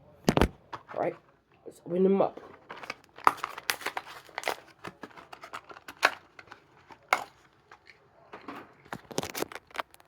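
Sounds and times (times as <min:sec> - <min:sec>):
plastic packaging tearing and crinkling: 0:02.6 - 0:07.9, 0:08.9 - 0:10.0.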